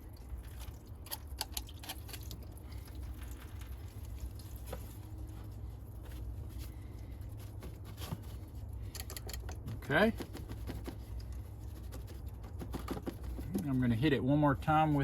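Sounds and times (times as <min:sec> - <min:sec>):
liquid dripping and pattering: 0:00.0 - 0:07.9, 0:08.6 - 0:12.4
steady low hum: 0:00.0 - 0:15.0.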